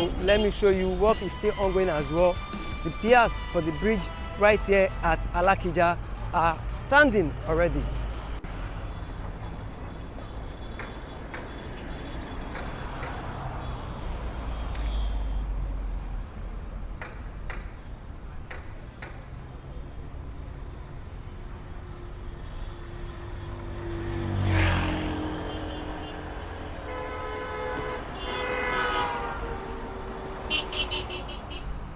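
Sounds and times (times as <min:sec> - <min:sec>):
road traffic rumble: 0:00.0 - 0:31.9
vehicle horn: 0:25.0 - 0:31.8.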